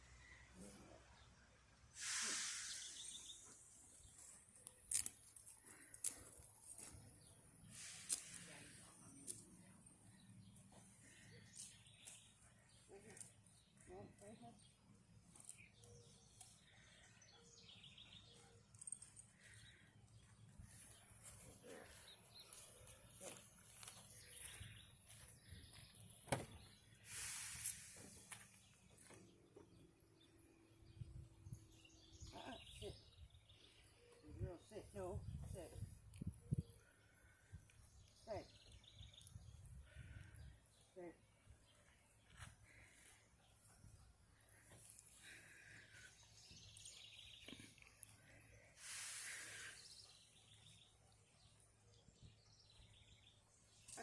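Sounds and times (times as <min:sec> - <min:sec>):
faint outdoor background noise: 0:00.0 - 0:54.0
brief hiss: 0:02.0 - 0:03.4, 0:27.0 - 0:28.3, 0:48.8 - 0:49.8.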